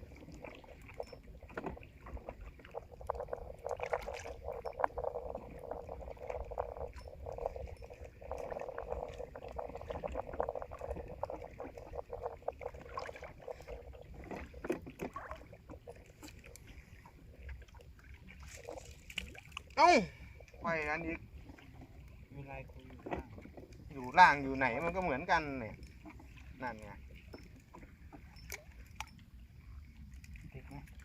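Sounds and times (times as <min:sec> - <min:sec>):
low rumble: 0:00.0 - 0:16.7
water splashing against boat: 0:00.0 - 0:31.0.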